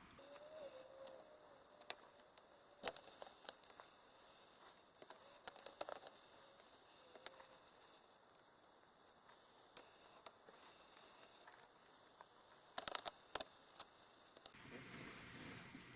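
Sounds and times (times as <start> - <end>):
laptop parts clicking and tapping: 0.1 - 4.0, 4.8 - 11.8, 12.7 - 14.6.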